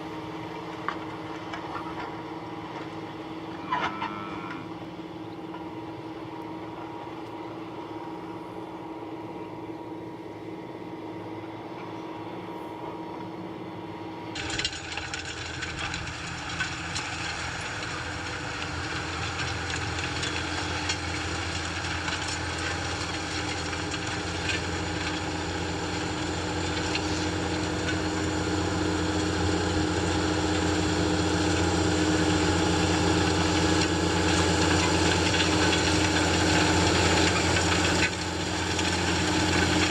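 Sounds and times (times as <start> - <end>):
tractor engine running under load: 0.0 - 39.9
disc harrow clicks and clanks: 14.4 - 25.4.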